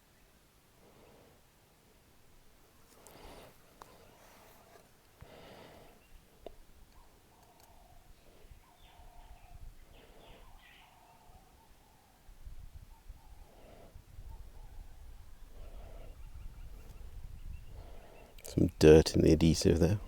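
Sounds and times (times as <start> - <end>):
light breathing: 0.8 - 1.6, 2.8 - 6.6, 9.8 - 11.0, 13.3 - 14.4, 15.4 - 17.0, 17.6 - 18.6
faint small clicks: 6.4 - 7.8.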